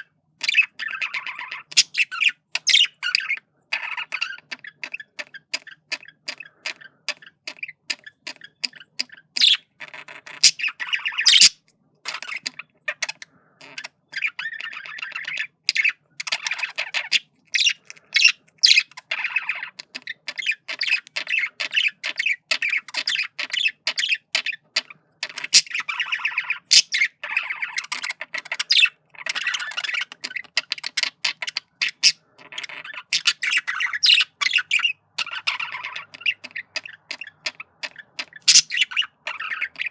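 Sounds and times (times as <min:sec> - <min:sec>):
budgerigar warbling: 0:00.0 - 0:39.9.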